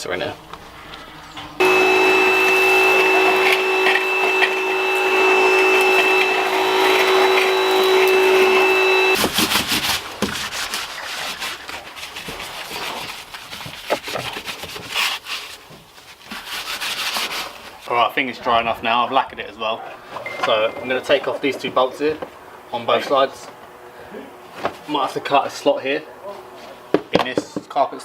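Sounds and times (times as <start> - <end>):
vacuum cleaner running: 1.6 - 13.2
rubbing and scraping: 1.8 - 17.9.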